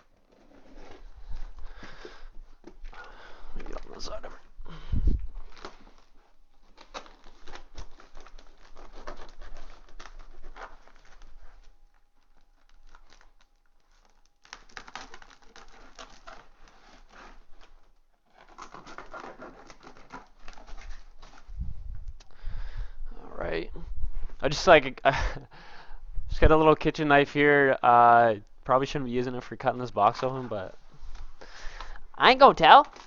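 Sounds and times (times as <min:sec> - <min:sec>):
knife cutting cardboard box: 0:00.0 - 0:01.7, 0:06.8 - 0:11.6, 0:18.4 - 0:21.5
tape and cardboard crinkling: 0:00.0 - 0:22.4, 0:29.6 - 0:33.0.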